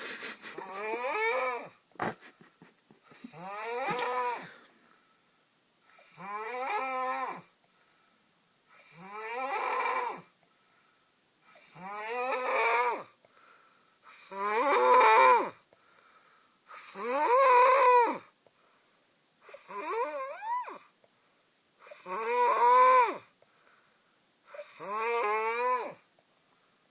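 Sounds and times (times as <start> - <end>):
man snoring: 0.0 - 2.3, 3.1 - 4.6, 6.0 - 7.5, 8.8 - 10.3, 11.6 - 13.1, 21.9 - 23.2, 24.5 - 26.0.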